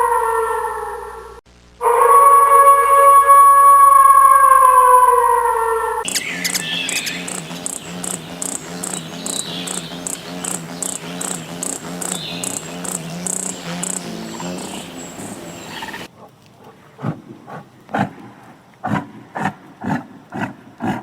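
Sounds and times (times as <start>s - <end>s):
crickets chirping: 6.1s - 16.1s
low continuous pulsing sound: 6.1s - 16.1s.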